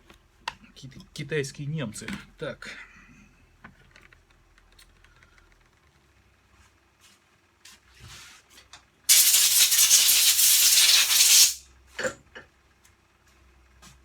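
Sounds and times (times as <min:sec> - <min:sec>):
loud steady hiss: 0:09.1 - 0:11.6.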